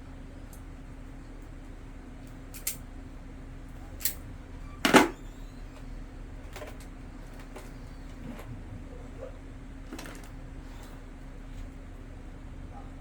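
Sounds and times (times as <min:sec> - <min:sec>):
steady low hum: 0:00.0 - 0:13.0.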